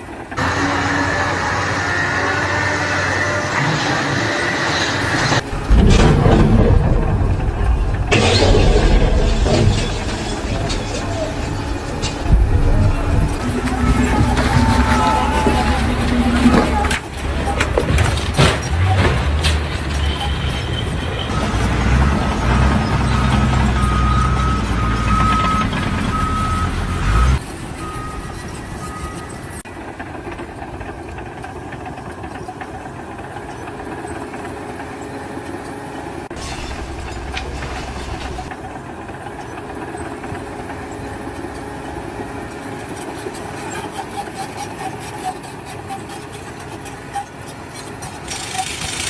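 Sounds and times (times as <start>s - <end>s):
steady machine noise: 0.0s - 23.2s, 27.4s - 49.0s
heavy machinery engine rumbling: 0.0s - 49.0s
reversing alarm beeping: 19.9s - 29.6s.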